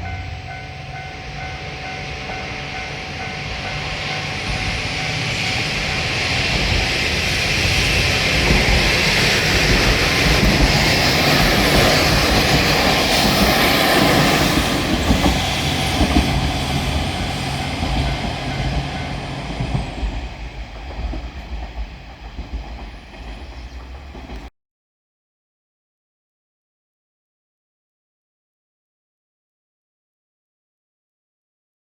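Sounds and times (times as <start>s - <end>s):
diesel engines running: 0.0s - 20.1s
train wheels clacking over rail joints: 1.8s - 24.5s.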